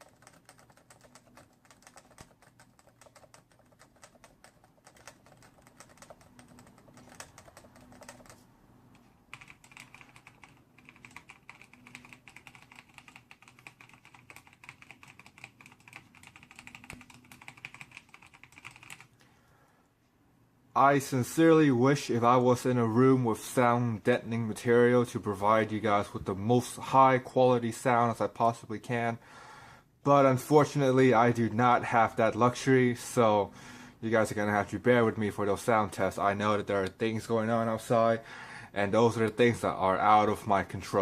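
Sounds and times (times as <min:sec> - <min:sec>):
mechanical keyboard typing: 0:00.0 - 0:19.1.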